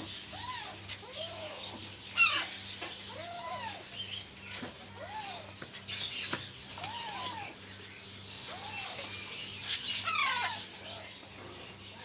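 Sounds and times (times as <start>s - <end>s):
parrot chicks calling: 0.2s - 5.6s, 6.7s - 7.6s, 8.2s - 11.2s.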